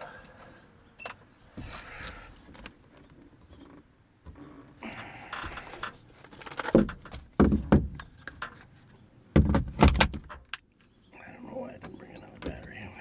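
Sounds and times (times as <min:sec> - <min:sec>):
knocks and bangs on boat: 0:06.8 - 0:08.0, 0:09.4 - 0:10.3.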